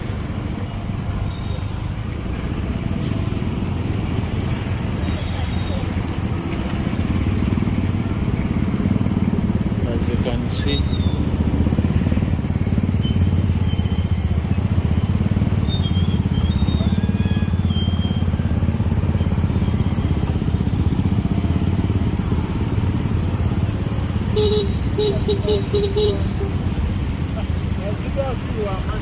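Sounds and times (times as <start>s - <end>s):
motorcycle engine running: 5.8s - 29.0s.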